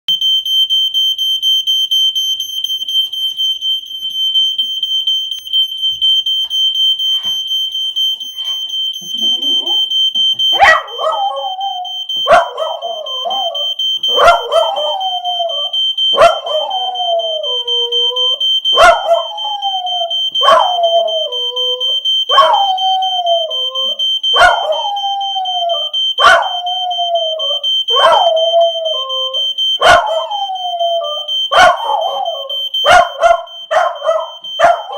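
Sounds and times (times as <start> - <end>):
fire alarm high-pitched tone: 0.1 - 34.9
dog howling: 10.6 - 34.9.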